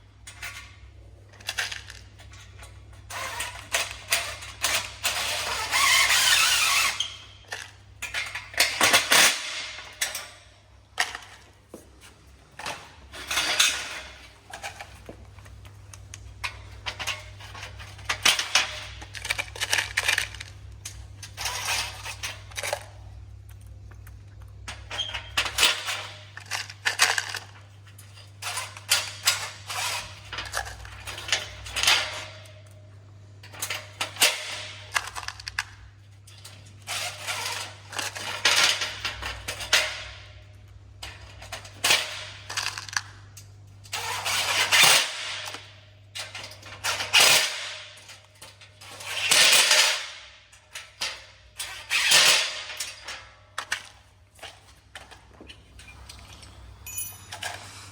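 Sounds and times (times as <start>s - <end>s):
metal frame parts clattering: 46.2s - 57.9s
steady low hum: 52.7s - 57.9s.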